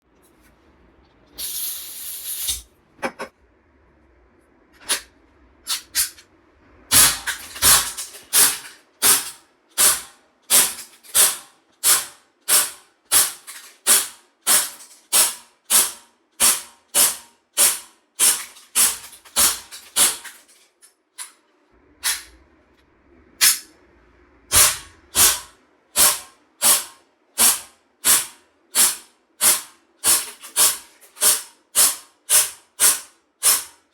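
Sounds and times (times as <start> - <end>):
gas hiss: 1.3 - 2.7
airsoft pistol shots: 24.5 - 33.7.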